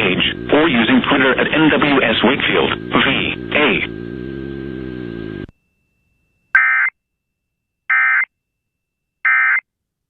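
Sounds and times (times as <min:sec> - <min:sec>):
radio broadcast audio: 0:00.0 - 0:03.9.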